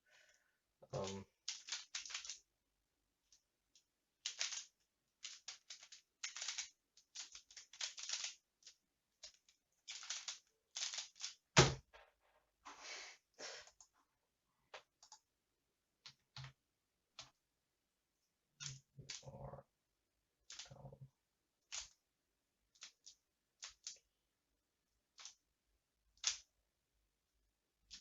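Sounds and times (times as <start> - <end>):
plastic puzzle clicking twists: 1.0 - 2.4, 3.3 - 11.5, 20.4 - 20.8, 21.6 - 22.0, 22.7 - 24.1, 25.1 - 25.4, 26.1 - 26.5.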